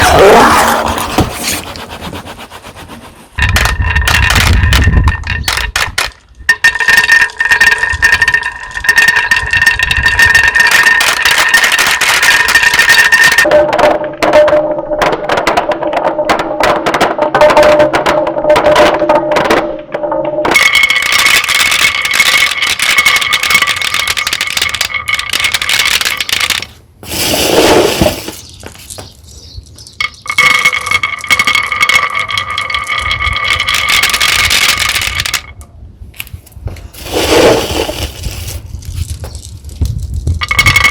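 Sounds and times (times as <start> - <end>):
marbles rolling down wooden run: 3.4 - 35.6, 36.9 - 40.9.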